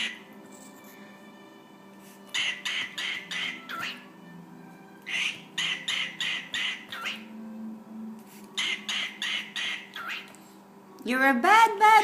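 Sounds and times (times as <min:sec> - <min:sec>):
cockatiel mimicking speech: 0:02.4 - 0:04.1, 0:05.1 - 0:07.3, 0:08.6 - 0:10.3.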